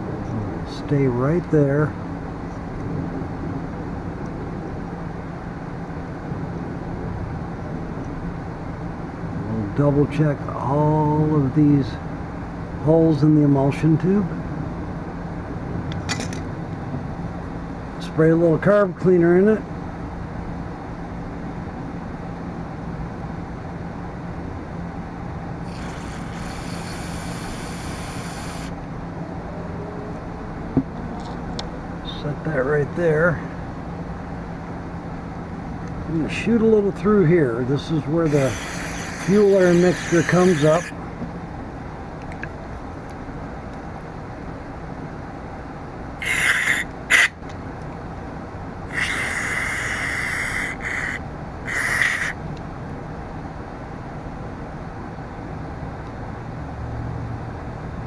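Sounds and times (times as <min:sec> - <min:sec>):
steady background hum: 0:00.0 - 0:58.0
aerosol spray hiss: 0:25.7 - 0:28.8, 0:38.3 - 0:40.9, 0:48.9 - 0:52.3.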